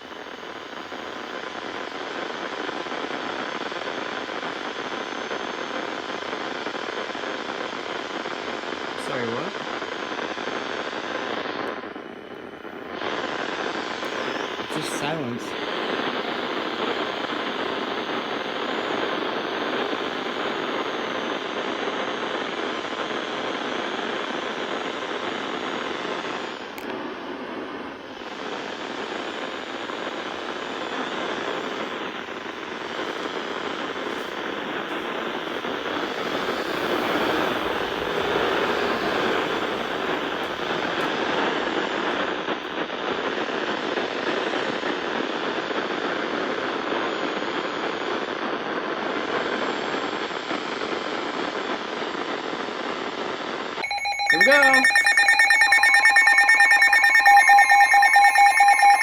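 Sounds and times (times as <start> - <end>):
radio static hiss: 9.0 - 9.7, 14.6 - 16.0.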